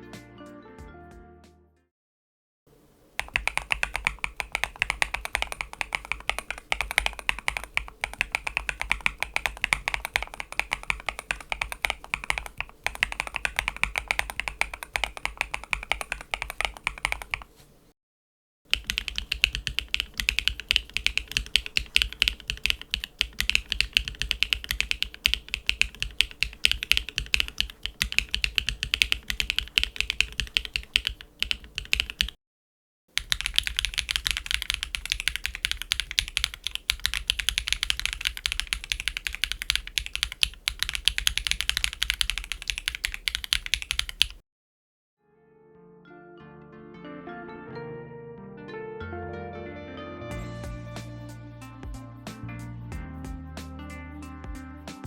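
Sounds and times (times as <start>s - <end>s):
mechanical keyboard typing: 3.2s - 17.6s, 18.7s - 32.4s, 33.2s - 44.4s.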